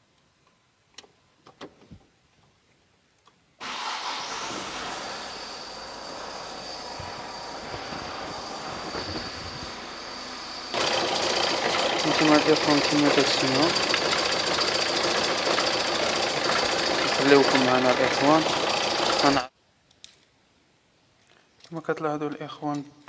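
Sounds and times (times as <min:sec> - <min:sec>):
engine rattling: 0:03.6 - 0:19.4
diesel engine starting and running: 0:03.6 - 0:19.5.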